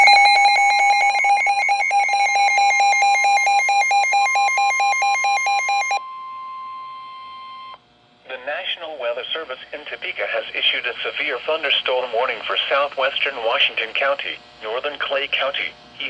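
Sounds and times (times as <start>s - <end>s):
rapid two-pitch alarm beeping: 0.0s - 6.0s
steady warning tone: 0.0s - 7.8s.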